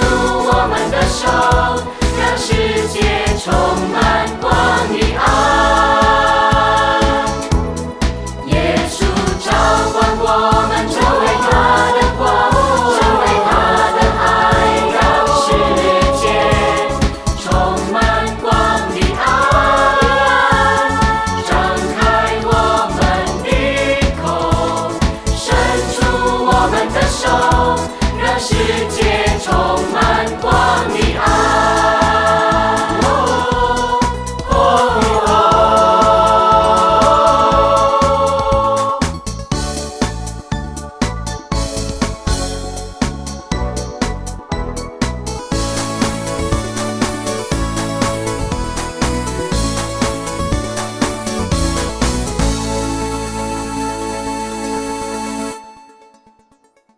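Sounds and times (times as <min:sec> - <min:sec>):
choir singing: 0:00.0 - 0:39.8
song with sung vocals: 0:00.0 - 0:40.4
driving drum beat: 0:00.0 - 0:53.8.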